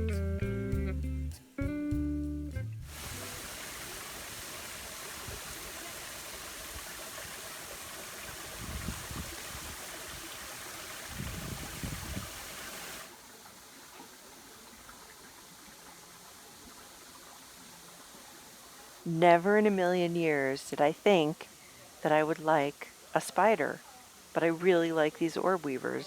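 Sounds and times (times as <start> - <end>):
waterfall rushing: 2.9 - 13.2.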